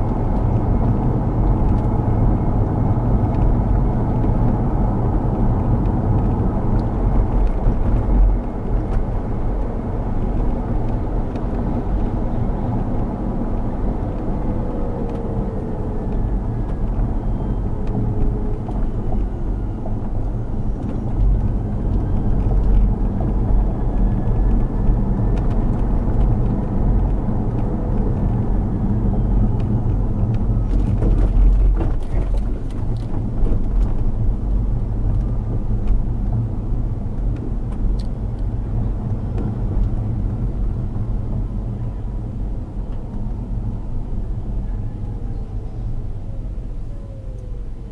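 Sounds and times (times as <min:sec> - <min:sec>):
car cabin road noise: 0:00.0 - 0:47.9
suspension clicks and knocks: 0:14.1 - 0:36.6.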